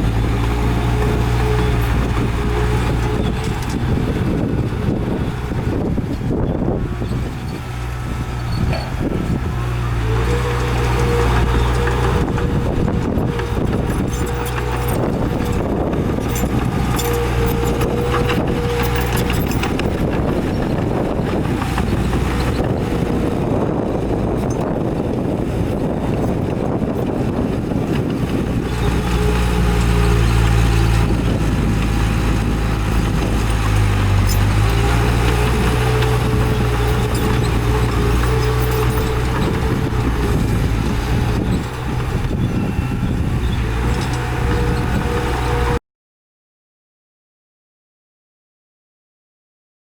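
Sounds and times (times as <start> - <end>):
heavy diesel engines running: 0.0 - 45.8
metallic clanks and rattles: 8.4 - 9.4, 10.9 - 23.0, 31.8 - 42.3.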